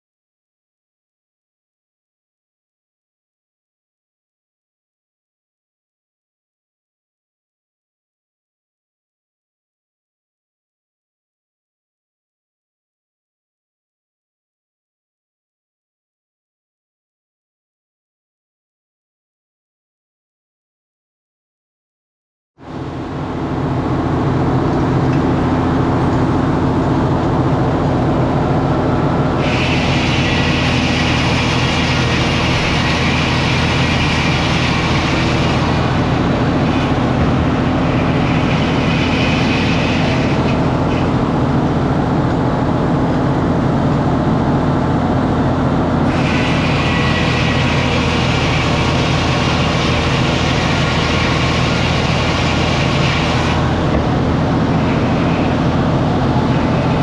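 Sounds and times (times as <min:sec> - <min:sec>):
engine drone: 0:22.6 - 0:57.0
saw whining through timber: 0:22.7 - 0:43.7, 0:45.9 - 0:57.0.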